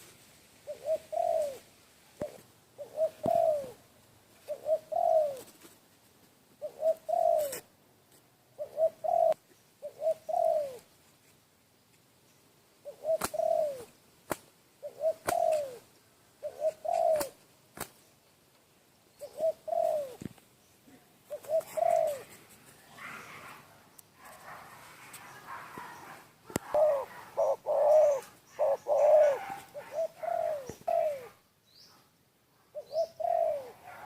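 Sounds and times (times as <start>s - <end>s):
dove cooing: 0.6s - 5.8s, 6.6s - 7.7s, 8.5s - 10.9s, 12.8s - 14.0s, 14.8s - 17.4s, 19.2s - 20.3s, 20.9s - 31.4s, 32.7s - 34.0s.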